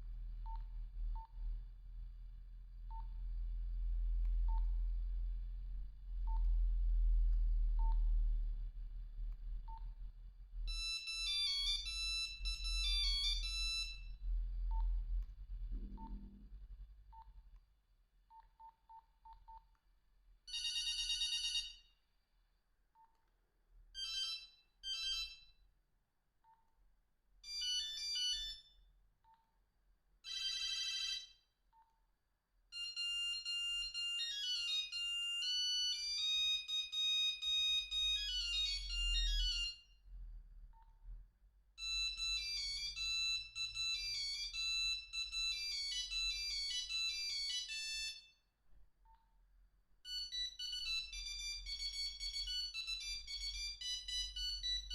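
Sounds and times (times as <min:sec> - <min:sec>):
beeping ringtone melodies: 0:10.7 - 0:14.9, 0:24.0 - 0:25.5, 0:27.5 - 0:28.7, 0:32.8 - 0:39.9, 0:41.8 - 0:48.3, 0:50.1 - 0:54.9
mobile phone ringtone beeps: 0:10.7 - 0:14.9, 0:20.5 - 0:21.9, 0:24.0 - 0:25.5, 0:27.4 - 0:28.8, 0:30.3 - 0:31.4, 0:32.7 - 0:39.9, 0:41.8 - 0:48.4, 0:50.1 - 0:54.9.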